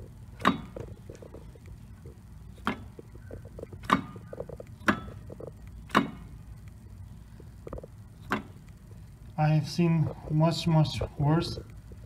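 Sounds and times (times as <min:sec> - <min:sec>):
driveshaft flex disc clicking: 0:00.0 - 0:09.0.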